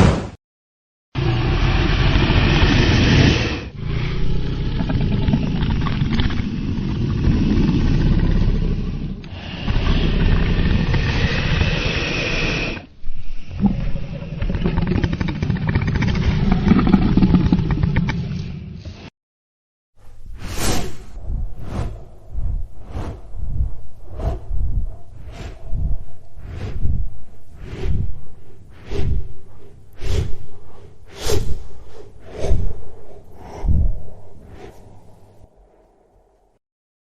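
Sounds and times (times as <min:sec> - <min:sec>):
dragon roaring: 0:01.2 - 0:05.8, 0:06.8 - 0:12.8.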